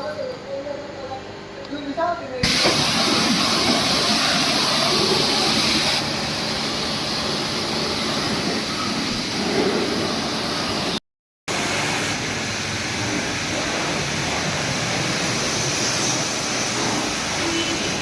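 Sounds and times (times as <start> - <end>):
pressure washer spraying: 2.4 - 18.0.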